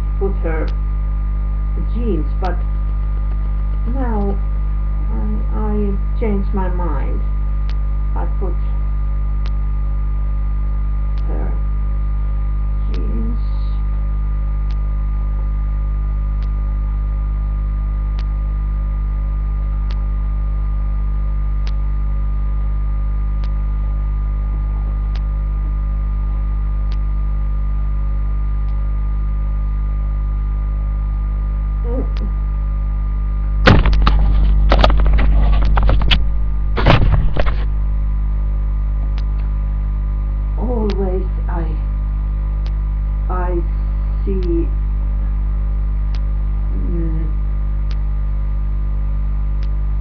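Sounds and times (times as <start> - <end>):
electrical mains hum: 0.0 - 50.0
loud crackling clatter: 33.6 - 38.2.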